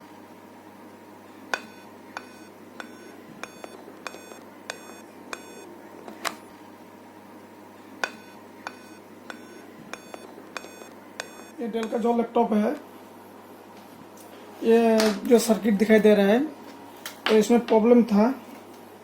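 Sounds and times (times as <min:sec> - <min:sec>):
short electronic beeps: 0:01.6 - 0:05.7, 0:08.0 - 0:12.0
sharp click: 0:08.0 - 0:12.0.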